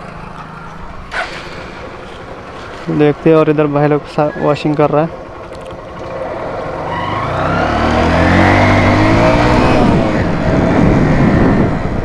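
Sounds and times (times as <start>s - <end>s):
vehicle passing by: 6.0s - 12.0s.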